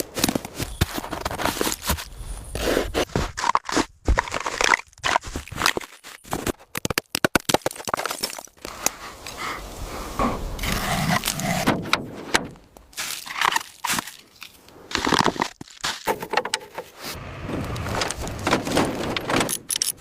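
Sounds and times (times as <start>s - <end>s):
sharp clicks and knocks: 16.0s - 16.9s.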